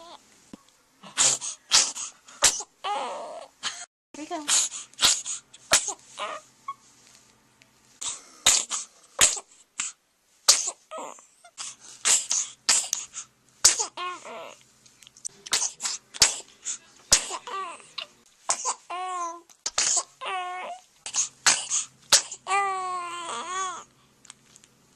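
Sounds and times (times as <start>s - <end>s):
baby sneezing: 1.1s - 2.8s, 4.4s - 6.3s, 8.0s - 10.9s, 11.5s - 14.2s, 15.5s - 19.0s, 19.6s - 20.2s, 21.0s - 22.5s
baby squealing: 6.2s - 6.8s.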